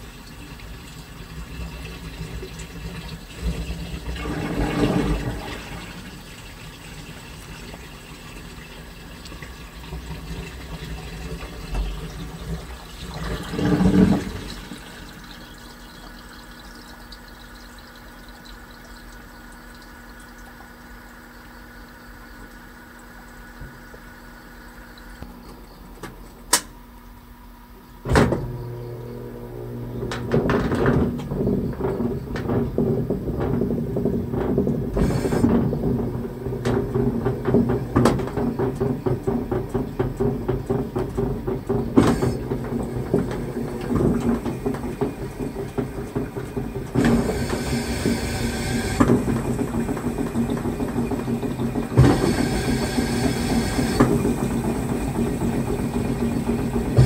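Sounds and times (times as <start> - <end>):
drum churning clothes and water: 0.0 - 57.0
motor hum: 9.8 - 57.0
washing machine click: 26.0 - 26.8.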